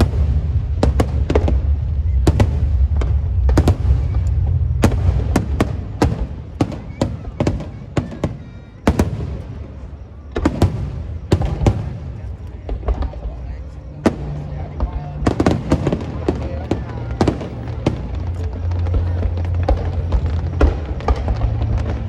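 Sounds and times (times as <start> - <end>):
steady low rumble: 0.0 - 8.0, 9.2 - 22.0
fireworks bangs and cracks: 0.0 - 22.0.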